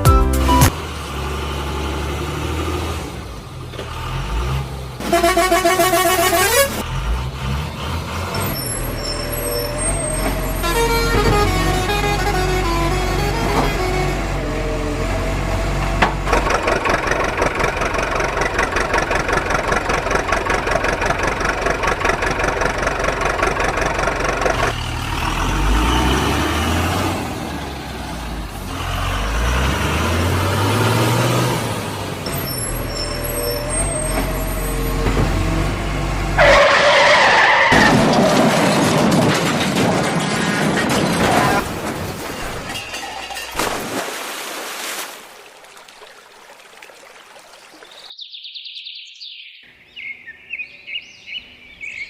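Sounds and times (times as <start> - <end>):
heavy vehicle engine revving: 0.6 - 39.9.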